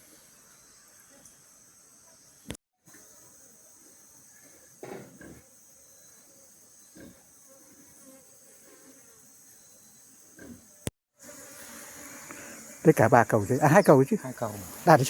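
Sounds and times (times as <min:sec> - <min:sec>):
bees buzzing: 0:03.0 - 0:15.0.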